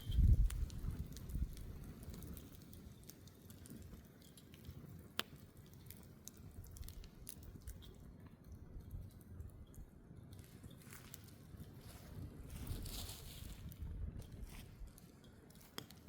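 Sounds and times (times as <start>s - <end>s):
sharp fire pop: 0.0s - 1.7s
campfire crackling: 0.0s - 16.0s.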